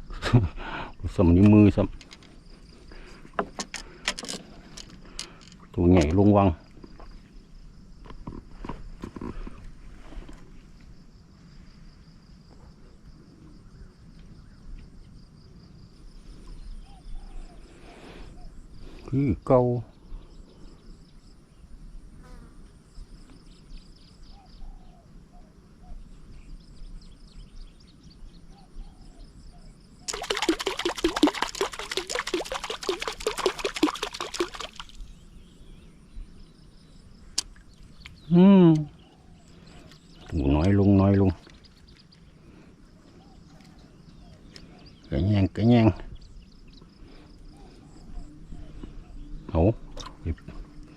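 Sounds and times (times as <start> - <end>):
higher pulsing insect trill: 0.0 - 50.9
insects trilling: 0.0 - 50.9
water splashing: 30.1 - 35.1.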